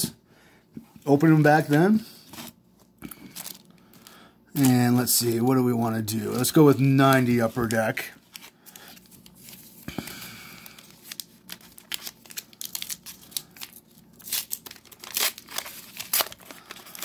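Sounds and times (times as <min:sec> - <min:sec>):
card wrapper crinkling: 0:02.4 - 0:17.0.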